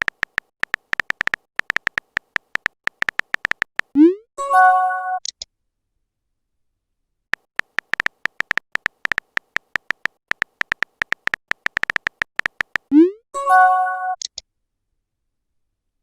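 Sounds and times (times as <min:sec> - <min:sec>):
keyboard typing clicks: 0:00.0 - 0:04.0, 0:07.4 - 0:13.0.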